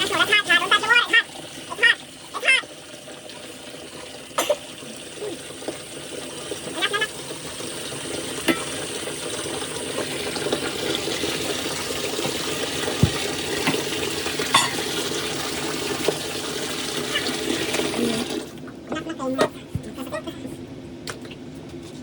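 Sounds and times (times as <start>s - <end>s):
water running: 0.0s - 20.3s.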